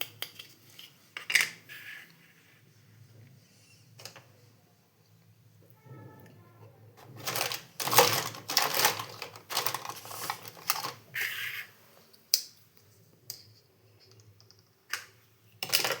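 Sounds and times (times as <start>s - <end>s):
toy pieces clicking and clattering: 7.2s - 11.6s.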